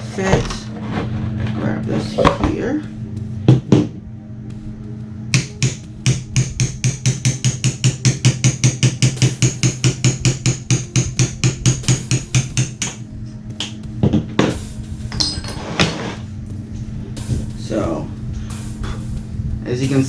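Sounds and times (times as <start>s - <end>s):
hammer tapping metal punch: 5.3s - 13.0s.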